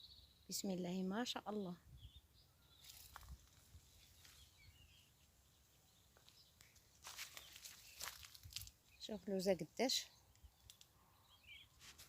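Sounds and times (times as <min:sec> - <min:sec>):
faint bird chirps: 0:00.0 - 0:11.8
rustling and crunching: 0:02.8 - 0:04.5, 0:06.2 - 0:08.8, 0:11.8 - 0:12.0.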